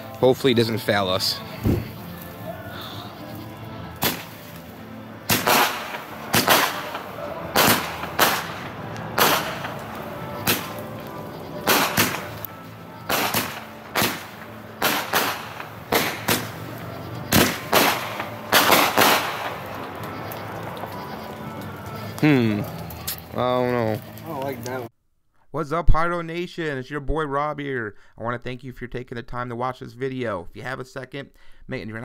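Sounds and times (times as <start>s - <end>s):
firework shots banging: 4.0s - 4.6s, 5.2s - 11.0s, 11.6s - 20.1s.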